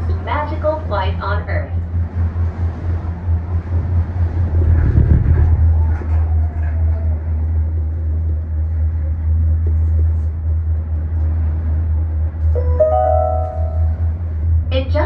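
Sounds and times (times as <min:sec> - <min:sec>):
gondola cabin rumble: 0:00.0 - 0:15.0
faint falling whine: 0:12.6 - 0:14.6.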